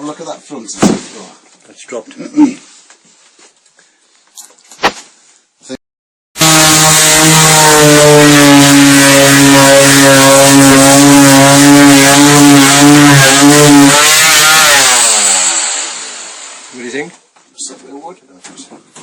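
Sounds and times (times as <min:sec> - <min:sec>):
power saw cutting wood: 0:06.4 - 0:17.1.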